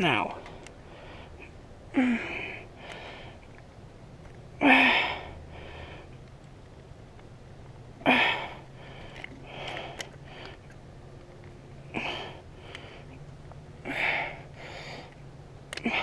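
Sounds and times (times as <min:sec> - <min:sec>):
small clicks of gun parts: 0:09.0 - 0:11.6, 0:15.1 - 0:16.0.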